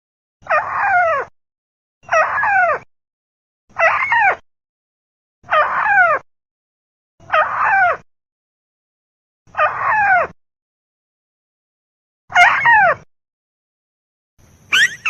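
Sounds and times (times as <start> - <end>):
recorded bird call: 0.4 - 1.3, 2.0 - 2.9, 3.7 - 4.4, 5.5 - 6.2, 12.3 - 13.0, 14.6 - 15.0.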